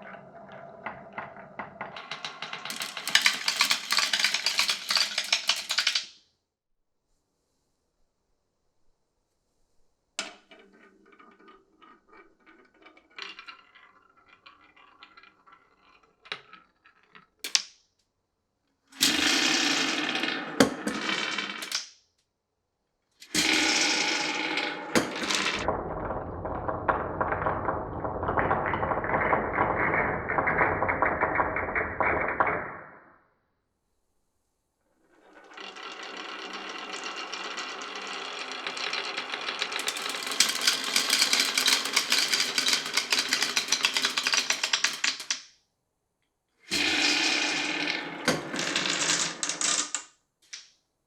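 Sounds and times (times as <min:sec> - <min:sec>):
marbles rolling on wooden run: 0:00.0 - 0:06.2, 0:10.2 - 0:17.6, 0:19.0 - 0:21.9, 0:23.2 - 0:33.0, 0:35.1 - 0:45.5, 0:46.7 - 0:50.1.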